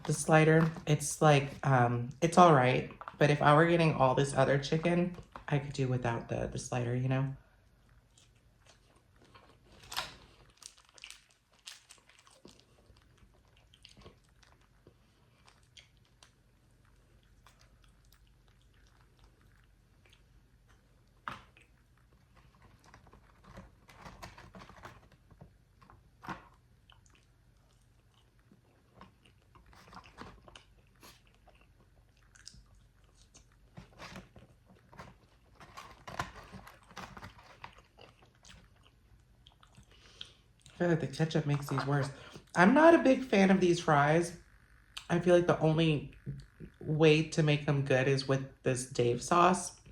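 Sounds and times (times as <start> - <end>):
person chewing crispy food: 7.5 - 40.8.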